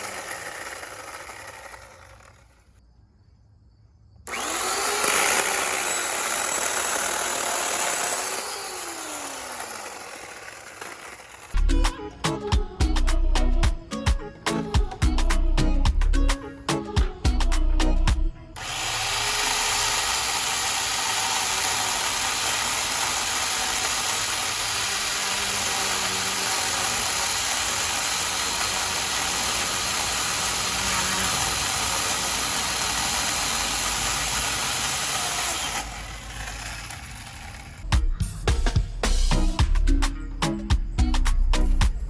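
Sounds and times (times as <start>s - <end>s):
electric chainsaw running: 0.0s - 2.8s, 4.3s - 11.6s, 18.6s - 37.9s.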